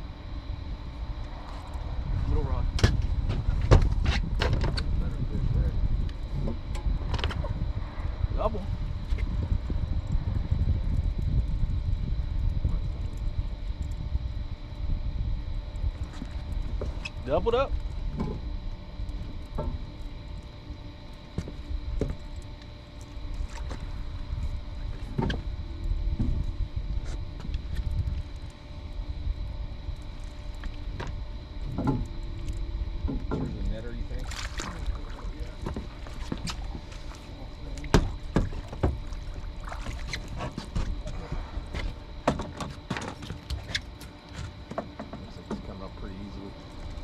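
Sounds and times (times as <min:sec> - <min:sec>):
low rumble: 0:00.0 - 0:42.3
faint high whine: 0:00.0 - 0:47.0
knocks and clicks on boat: 0:02.8 - 0:04.9, 0:19.4 - 0:19.8, 0:31.0 - 0:32.1, 0:33.0 - 0:33.7, 0:34.4 - 0:37.0, 0:37.7 - 0:43.8, 0:44.4 - 0:45.8.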